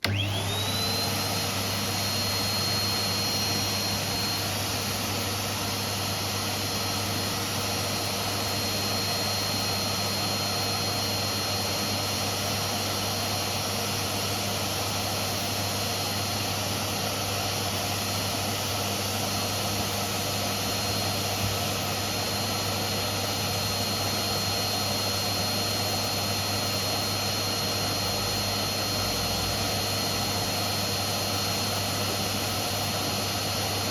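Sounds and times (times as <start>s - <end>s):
vacuum cleaner running: 0.0s - 33.9s.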